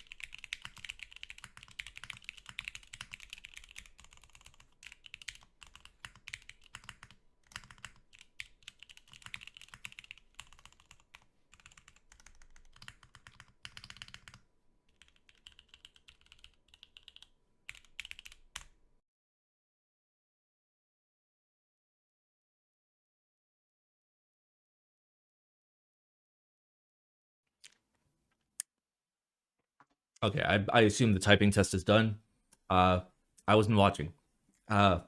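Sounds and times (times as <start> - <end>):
mechanical keyboard typing: 0.0 - 18.7.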